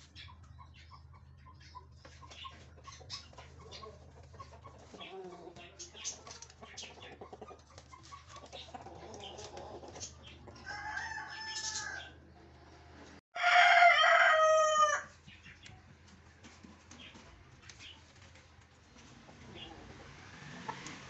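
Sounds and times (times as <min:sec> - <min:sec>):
rooster crowing: 0:10.6 - 0:12.2, 0:13.4 - 0:15.1.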